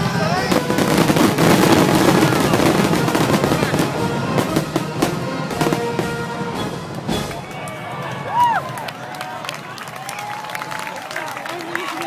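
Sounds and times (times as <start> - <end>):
fireworks bursting and crackling: 0.0 - 8.8.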